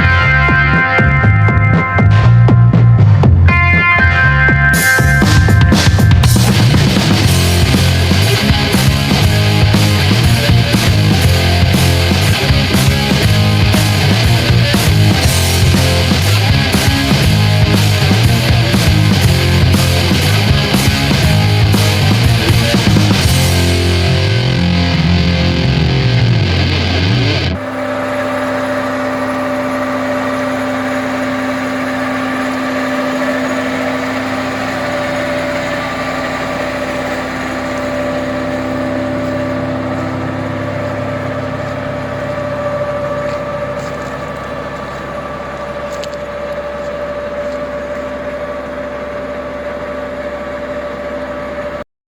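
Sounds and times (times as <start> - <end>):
rock music: 0.0 - 30.9
excavator engine running: 0.0 - 51.8.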